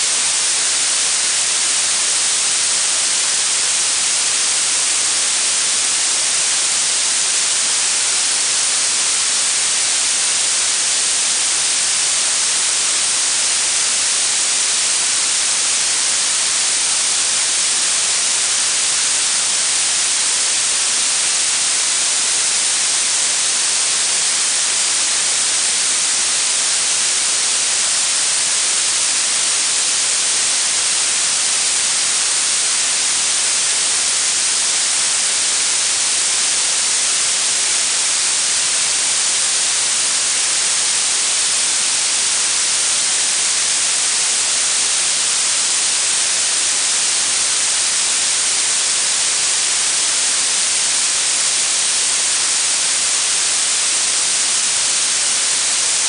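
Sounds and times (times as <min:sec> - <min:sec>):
steady high-pitched hiss: 0:00.0 - 0:56.0.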